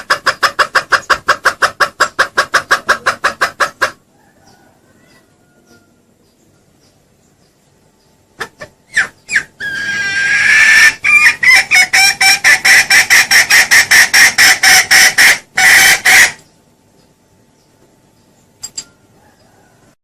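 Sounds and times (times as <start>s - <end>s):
junglefowl calling: 0.0s - 6.1s, 8.4s - 16.5s.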